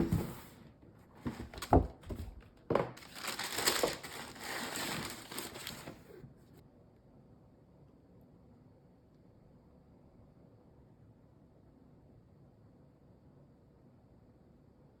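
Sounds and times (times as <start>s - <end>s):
paper crinkling and rustling: 1.2s - 6.3s.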